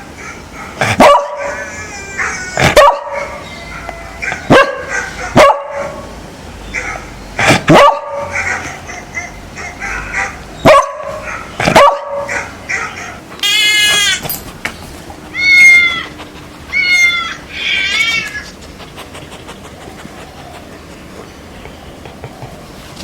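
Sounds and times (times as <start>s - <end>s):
dog barking: 0.2s - 3.4s, 4.1s - 6.1s, 6.7s - 13.2s
high-pitched drawn-out animal cries: 13.4s - 14.4s, 15.3s - 18.6s.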